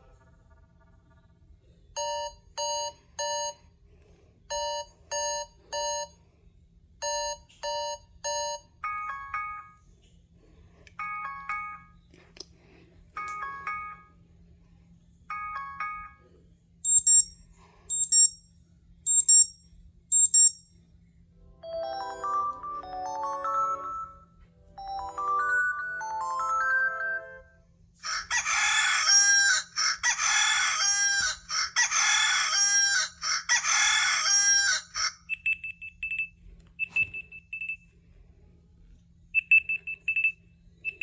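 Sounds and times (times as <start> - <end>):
melodic alarm tune: 7.0 - 9.8, 11.0 - 12.0, 13.2 - 14.2, 15.3 - 16.2, 21.6 - 27.6
alarm beeps from tablet speaker: 16.8 - 18.4, 19.1 - 20.7, 35.3 - 37.9, 39.4 - 41.0.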